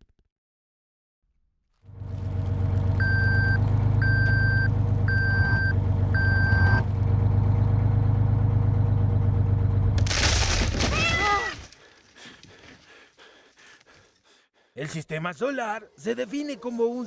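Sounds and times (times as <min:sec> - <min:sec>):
large vehicle engine running: 0:01.8 - 0:10.4
reversing alarm beeping: 0:03.0 - 0:06.8.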